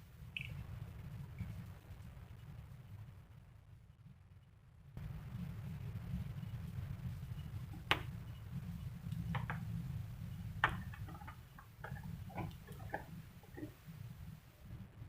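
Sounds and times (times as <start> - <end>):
steady low rumble: 0.0 - 15.0
sharp clicks and knocks: 7.7 - 8.1, 9.1 - 9.8, 10.6 - 13.9.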